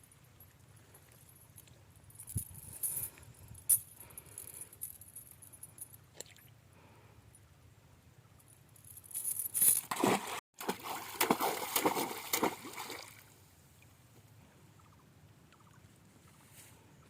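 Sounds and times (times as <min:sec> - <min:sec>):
water splashing and sloshing: 0:09.8 - 0:13.9.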